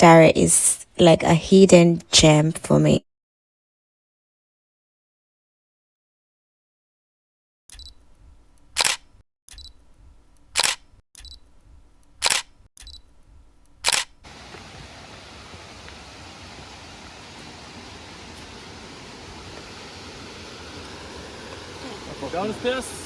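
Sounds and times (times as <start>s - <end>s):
camera shutter clicking: 8.6s - 9.8s, 10.4s - 11.4s, 12.1s - 13.1s, 13.7s - 14.2s
rush of falling water: 14.3s - 23.0s.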